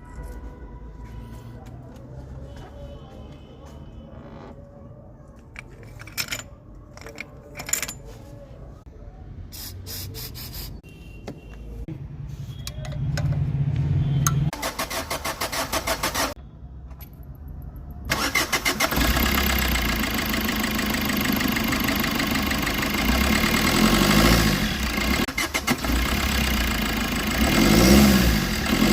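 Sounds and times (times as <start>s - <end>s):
car engine cranking: 14.5s - 16.4s, 18.1s - 28.9s.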